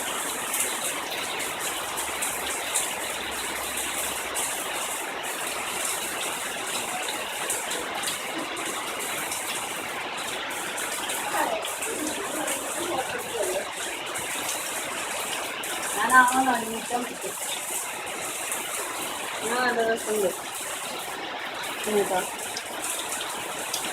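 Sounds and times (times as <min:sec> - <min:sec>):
heavy rain hissing: 0:00.0 - 0:23.9
faint voices: 0:06.6 - 0:14.4.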